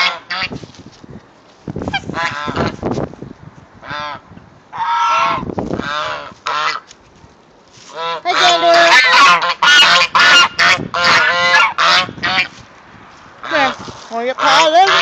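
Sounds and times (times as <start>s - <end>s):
geese honking: 0.0s - 0.6s, 1.9s - 2.8s, 3.8s - 6.9s, 7.9s - 12.6s, 14.4s - 15.0s.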